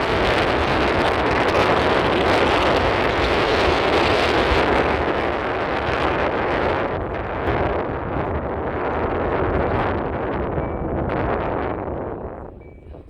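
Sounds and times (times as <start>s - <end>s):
car wind and road noise: 0.0s - 13.0s.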